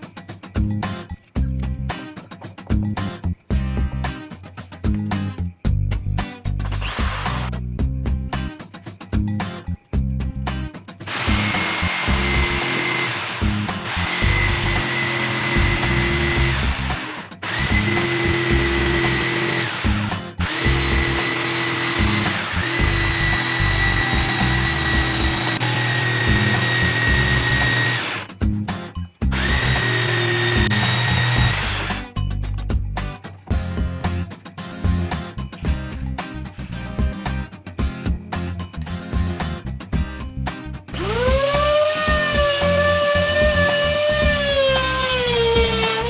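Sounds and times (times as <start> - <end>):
electric power tool motor: 6.7 - 7.5, 11.1 - 28.3, 29.3 - 32.0, 41.0 - 46.0.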